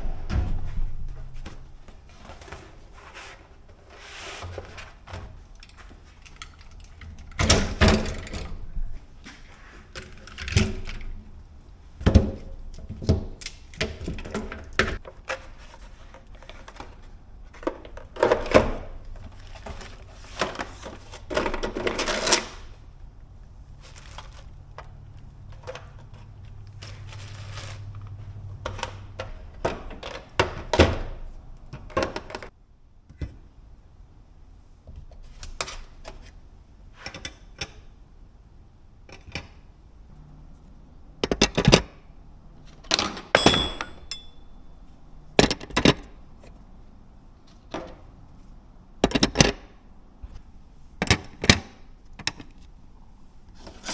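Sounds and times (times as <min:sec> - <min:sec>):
metal tools clinking in drawers: 0:42.9 - 0:45.0.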